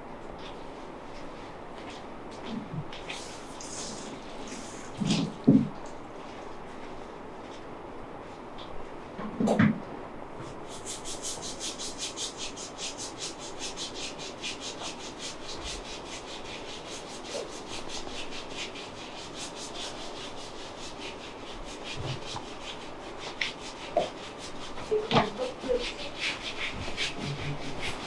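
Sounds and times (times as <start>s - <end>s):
hands rubbing briskly: 3.0s - 5.5s, 10.4s - 28.0s.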